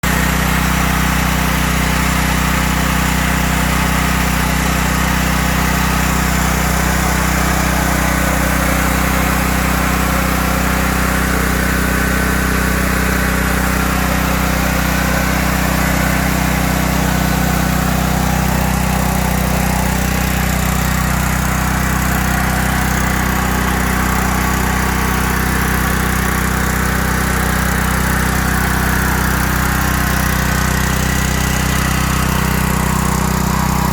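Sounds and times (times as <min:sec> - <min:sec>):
portable generator engine running: 0:00.0 - 0:33.9.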